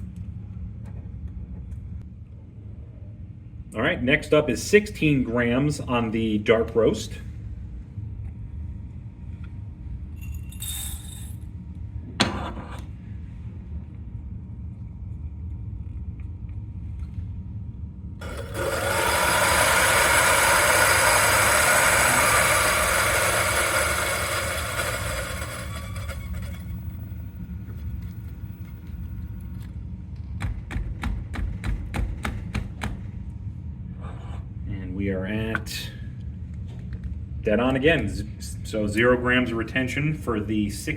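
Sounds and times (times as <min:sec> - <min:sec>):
coffee grinder grinding beans: 0:18.2 - 0:27.0.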